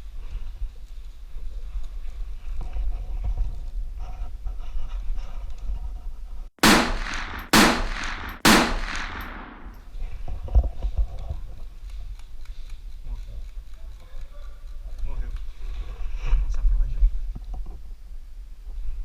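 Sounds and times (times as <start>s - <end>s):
gunshots with echo: 6.6s - 9.8s.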